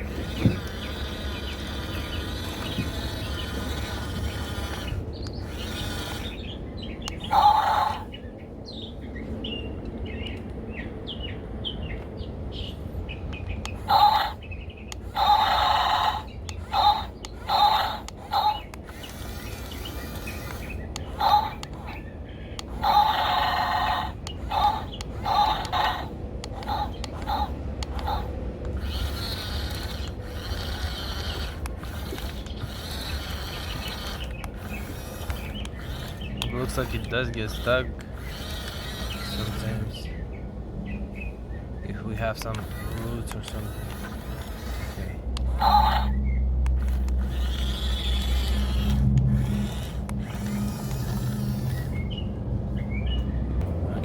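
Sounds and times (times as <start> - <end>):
toy electric motors whining: 0.0 - 8.1, 12.7 - 40.2, 42.0 - 52.3
birds chirping: 0.0 - 53.6
low rumble: 43.7 - 54.0.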